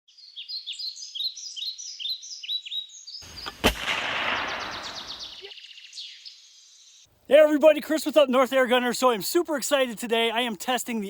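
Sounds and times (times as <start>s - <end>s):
songbird whistling: 0.2s - 3.6s, 4.4s - 6.5s
air rifle shot: 3.3s - 5.4s.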